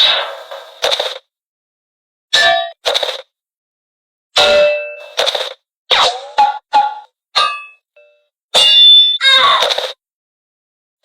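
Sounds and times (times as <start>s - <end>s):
ringing metallic clang: 6.4s - 9.0s.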